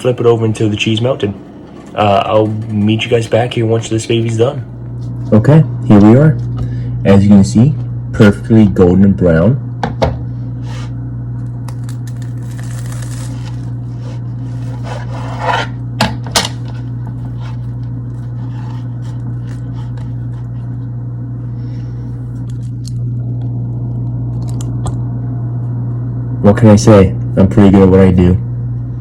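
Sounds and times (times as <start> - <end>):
steady low hum: 0.0 - 29.0
utensil scraping frying pan: 14.0 - 15.8.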